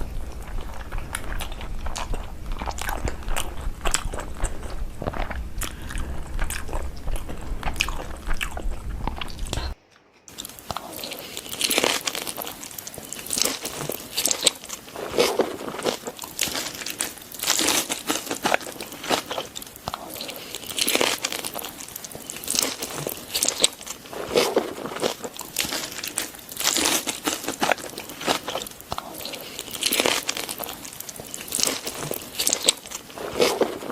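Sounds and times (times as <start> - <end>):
steady low hum: 0.0 - 26.7
chewing and crunching food: 0.0 - 33.9.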